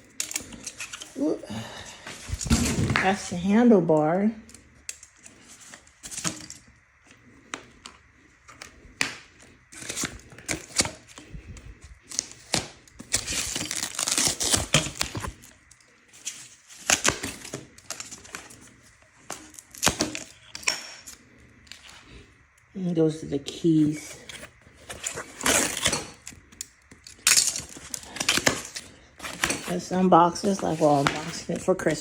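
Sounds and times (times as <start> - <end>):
packaging rustling and crinkling: 2.0 - 3.4, 4.9 - 22.2, 23.9 - 32.0
packaging tearing: 12.1 - 18.6, 24.8 - 31.6.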